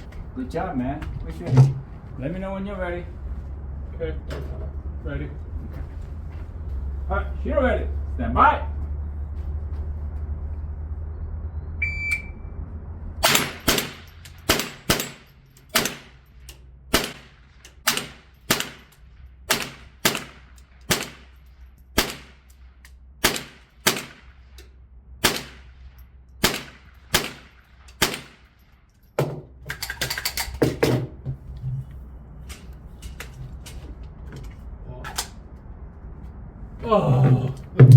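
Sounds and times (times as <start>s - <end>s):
shot timer beep: 11.8s - 12.4s
rifle shots hitting steel: 13.2s - 28.9s
clatter of clicks and knocks: 29.0s - 31.5s.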